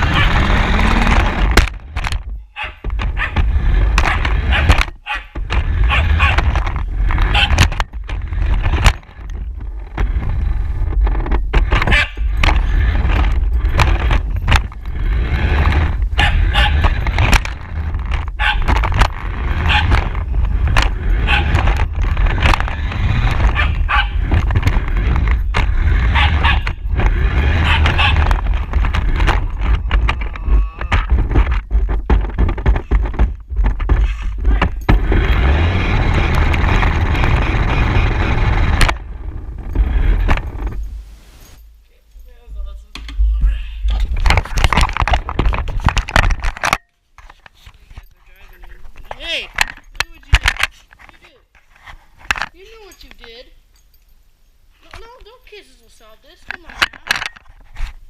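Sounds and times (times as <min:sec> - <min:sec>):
rc car rumbling and rattling: 0:00.0 - 0:41.0, 0:43.8 - 0:53.5, 0:54.8 - 0:58.0
dog barking: 0:02.6 - 0:03.4, 0:04.0 - 0:05.3, 0:05.9 - 0:06.4, 0:07.3 - 0:07.6, 0:11.9 - 0:12.2, 0:16.2 - 0:16.8, 0:18.4 - 0:18.7, 0:19.7 - 0:19.9, 0:23.6 - 0:24.2, 0:26.1 - 0:26.6, 0:27.6 - 0:28.2.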